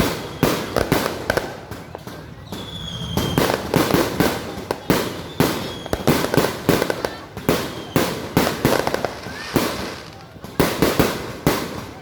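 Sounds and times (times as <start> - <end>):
firework high whistle: 0.0 - 1.0, 2.3 - 6.3
fireworks bursting: 0.0 - 12.0.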